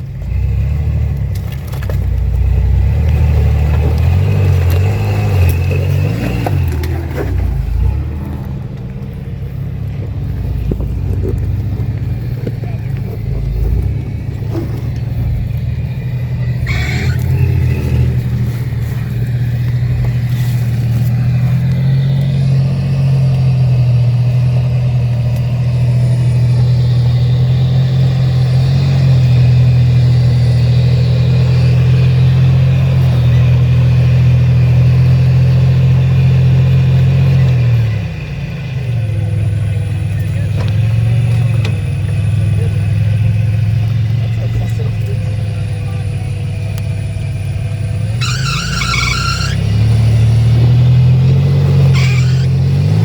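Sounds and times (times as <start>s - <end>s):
off-road vehicle engine revving: 0.0s - 53.0s.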